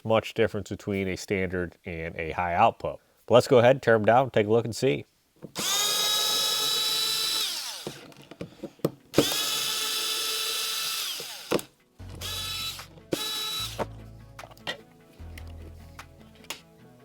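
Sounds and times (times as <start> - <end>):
cordless drill motor whine: 5.6 - 8.0, 9.2 - 13.9.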